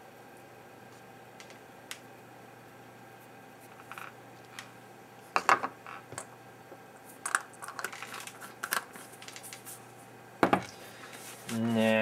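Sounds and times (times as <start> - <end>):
small objects clattering on workbench: 3.7 - 4.2, 5.4 - 6.3, 7.2 - 9.6.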